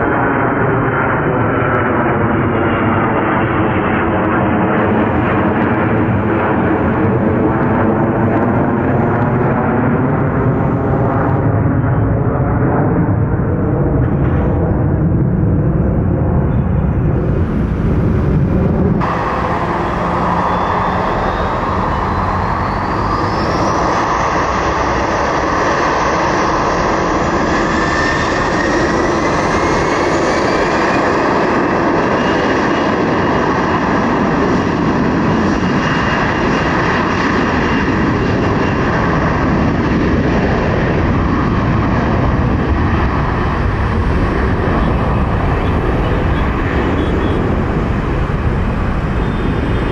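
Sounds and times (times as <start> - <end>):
jet engines spooling up: 16.9 - 49.9.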